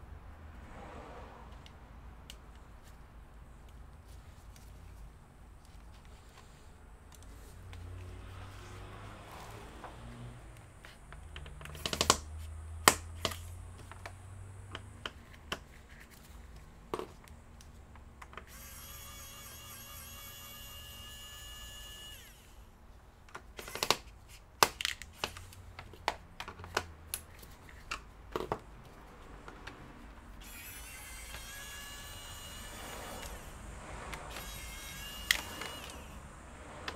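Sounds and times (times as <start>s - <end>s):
small parts and tools clicking: 10.6s - 22.6s, 34.1s - 36.2s.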